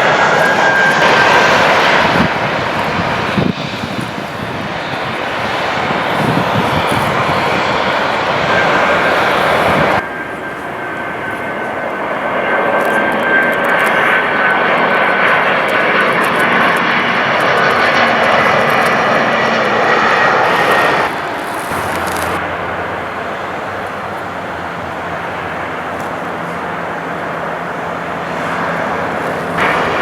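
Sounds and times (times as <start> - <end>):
airliner engines running: 0.0 - 30.0.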